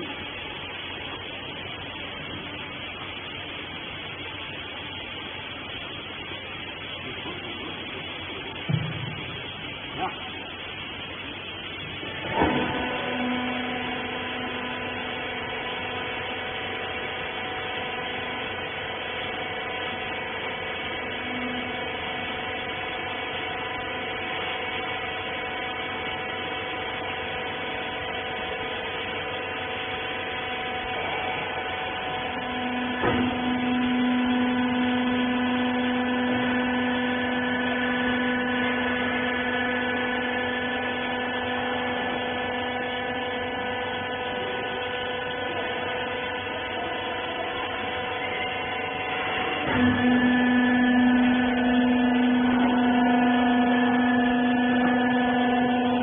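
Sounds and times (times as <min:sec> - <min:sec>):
hydraulic power unit humming: 0:00.0 - 0:56.0.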